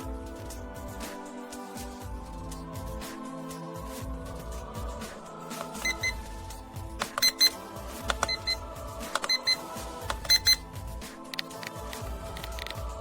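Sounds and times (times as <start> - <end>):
background music: 0.0 - 13.0
alarm clock double beeps: 5.6 - 6.2, 7.0 - 10.6.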